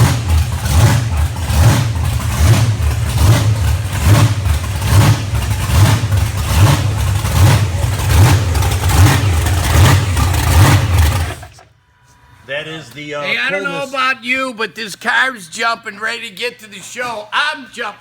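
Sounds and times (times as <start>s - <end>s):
car engine running loud: 0.0s - 11.6s.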